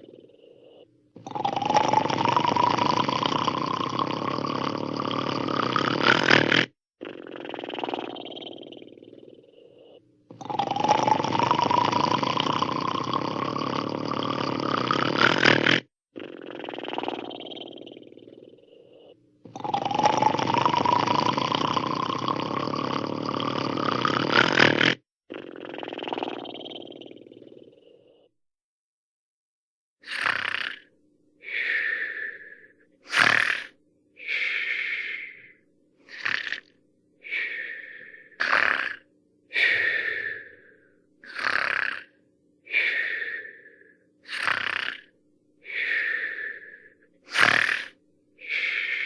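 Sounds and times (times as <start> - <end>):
soft breath: 0.0 - 1.0, 9.1 - 10.1, 18.3 - 19.2, 31.4 - 33.4, 34.2 - 35.6, 37.2 - 38.4, 39.5 - 41.0, 42.6 - 44.5, 45.6 - 47.6, 48.4 - 49.0
cartoon rasping snore: 0.0 - 28.3, 30.0 - 30.9, 31.7 - 33.8, 35.2 - 36.7, 37.3 - 43.6, 44.2 - 49.0
exhale with high whistle: 31.4 - 35.6, 37.2 - 38.4, 39.5 - 41.0, 42.7 - 44.6, 45.6 - 49.0.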